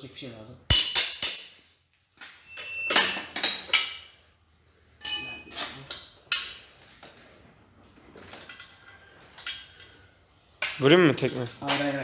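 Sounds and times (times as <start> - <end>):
metal tools clanking: 2.4 - 4.0, 5.0 - 6.6.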